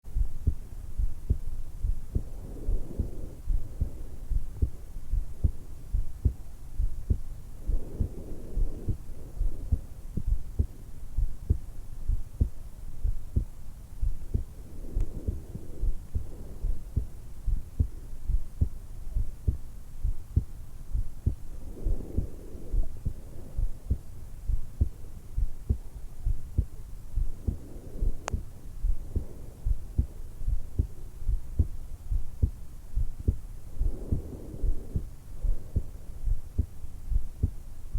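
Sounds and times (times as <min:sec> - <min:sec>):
heartbeat thumps: 0:00.0 - 0:37.9
slow breathing: 0:01.3 - 0:05.3, 0:07.1 - 0:11.3, 0:14.3 - 0:18.0, 0:21.2 - 0:25.5, 0:27.2 - 0:31.7, 0:33.2 - 0:36.7.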